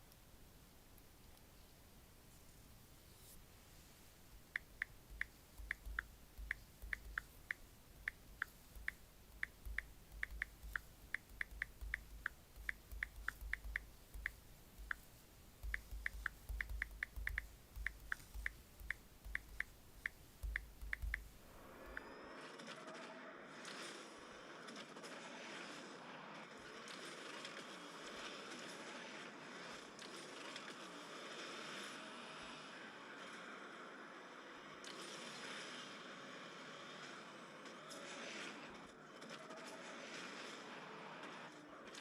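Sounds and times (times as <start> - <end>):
fingertips tapping touchscreen: 3.2 - 22.0.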